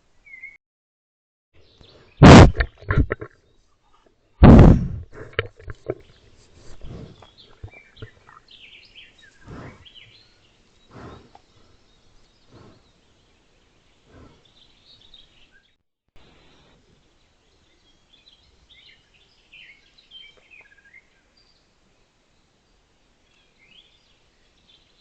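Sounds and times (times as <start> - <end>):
small birds chirping: 5.7 - 25.0
soft puffs of noise: 6.2 - 7.5, 9.2 - 10.0, 10.9 - 11.8.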